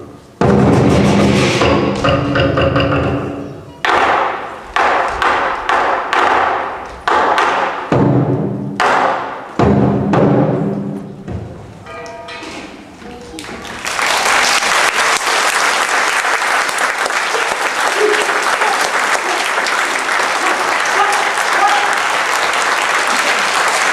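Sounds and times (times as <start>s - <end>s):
drum and crash cymbals: 0.4s - 3.4s
audience applause: 13.3s - 23.9s.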